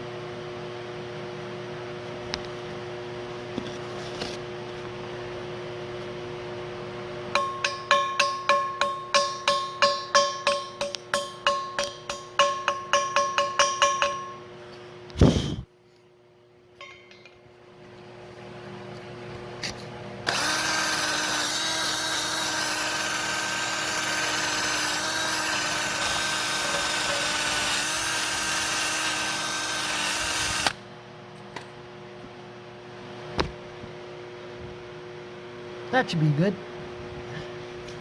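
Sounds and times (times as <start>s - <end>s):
welding arc hissing: 20.3s - 30.8s.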